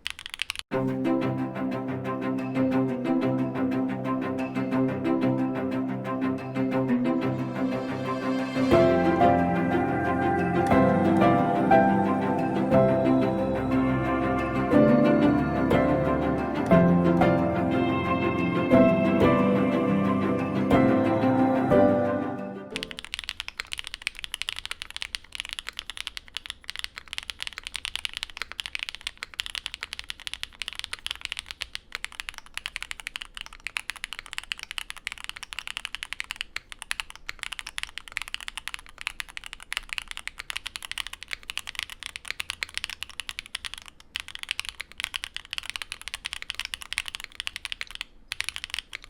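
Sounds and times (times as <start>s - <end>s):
mechanical keyboard typing: 0.0s - 0.7s, 22.7s - 49.0s.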